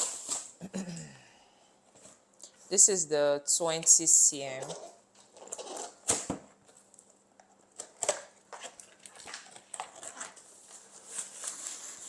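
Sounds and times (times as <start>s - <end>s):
packaging rustling: 4.7s - 12.0s.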